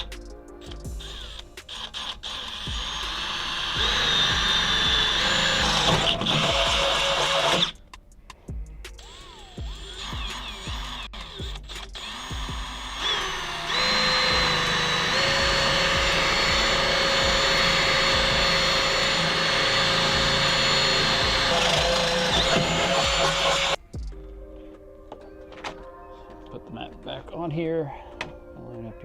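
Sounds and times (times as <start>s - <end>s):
electric drill whining: 0.9s - 7.8s, 9.0s - 23.8s.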